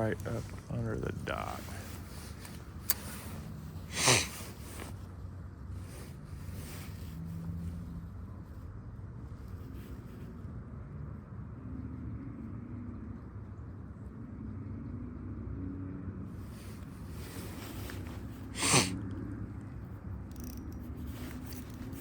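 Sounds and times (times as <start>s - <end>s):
person sneezing: 3.9s - 4.8s, 18.6s - 19.0s.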